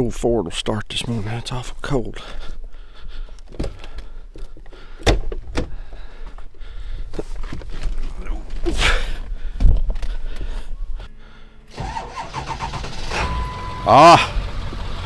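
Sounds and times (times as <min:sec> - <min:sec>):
truck door clunks and knocks: 0:05.0 - 0:05.9.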